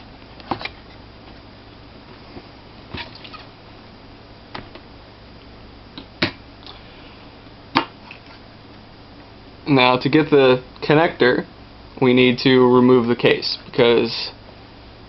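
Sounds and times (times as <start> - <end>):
hard drive case being handled: 0.4 - 1.5.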